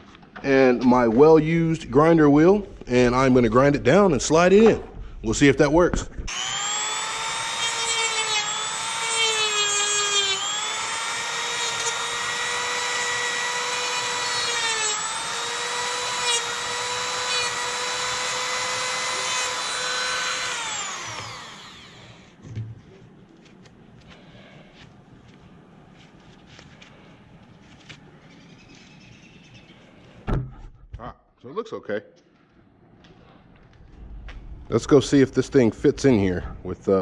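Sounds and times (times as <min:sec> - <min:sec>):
rotary tool grinding whine: 0:06.3 - 0:22.4.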